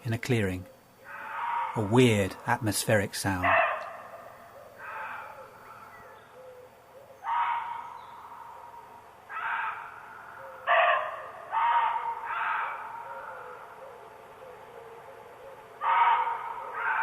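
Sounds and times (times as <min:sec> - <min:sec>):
deer barking: 0:01.0 - 0:02.2, 0:03.3 - 0:05.9, 0:07.2 - 0:08.0, 0:09.3 - 0:13.7, 0:15.8 - 0:17.0.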